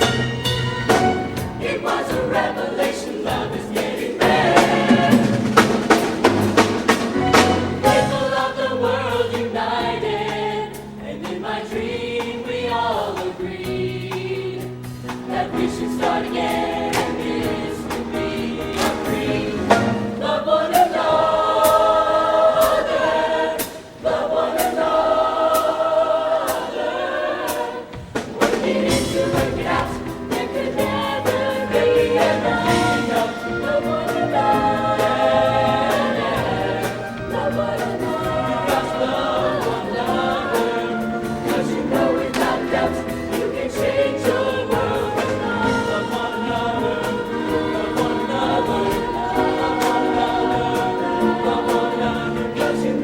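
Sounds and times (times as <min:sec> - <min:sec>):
live band playing: 0:00.0 - 0:02.0, 0:04.2 - 0:08.4
drum kit beat: 0:00.0 - 0:25.8, 0:27.4 - 0:53.0
choir singing in harmony: 0:00.0 - 0:53.0.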